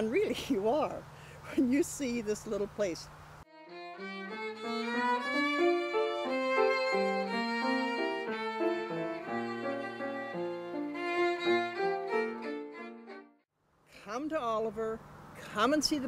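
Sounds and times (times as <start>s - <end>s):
violin melody: 3.5s - 13.5s.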